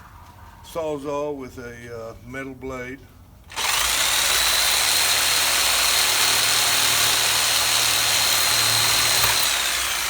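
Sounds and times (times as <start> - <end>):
reciprocating saw cutting metal: 3.5 - 10.0.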